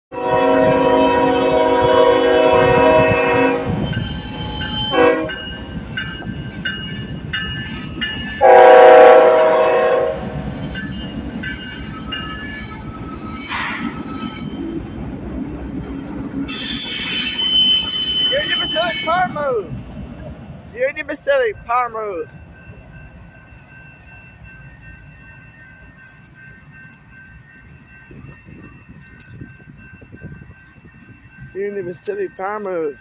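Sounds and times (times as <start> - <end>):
locomotive air horn: 0.1 - 3.8, 4.8 - 5.4, 8.4 - 10.4
locomotive rumble: 0.2 - 33.0
steel wheel squeal: 3.7 - 8.5, 10.0 - 14.8, 16.5 - 19.4.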